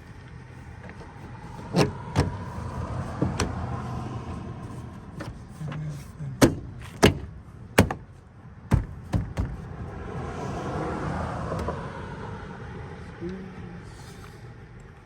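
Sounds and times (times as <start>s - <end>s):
plastic panel knocks: 6.4s - 8.1s, 8.7s - 9.6s.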